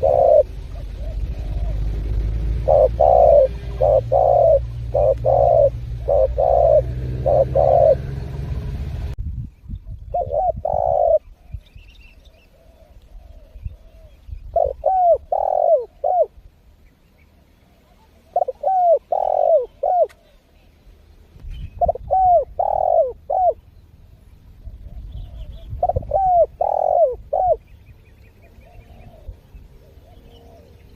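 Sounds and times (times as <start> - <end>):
dove cooing: 0.0 - 9.0, 10.1 - 11.6, 12.3 - 16.4, 17.9 - 20.4, 21.7 - 30.9
low hum: 0.0 - 10.7.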